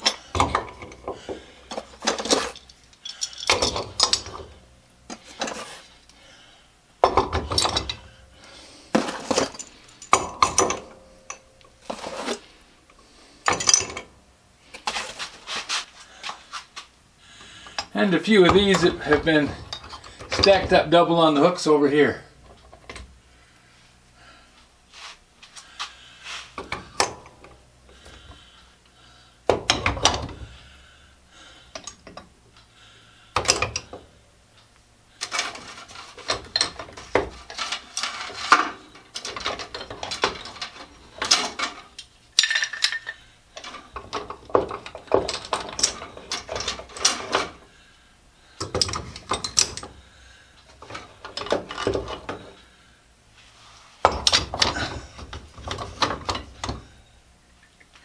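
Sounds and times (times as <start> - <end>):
steel clamps clanking: 0.0 - 5.9, 7.0 - 8.2, 8.9 - 12.5, 13.4 - 14.2, 17.5 - 21.6, 29.5 - 30.8, 33.4 - 34.0, 35.2 - 47.7, 48.6 - 50.0, 50.7 - 52.6, 54.0 - 57.0.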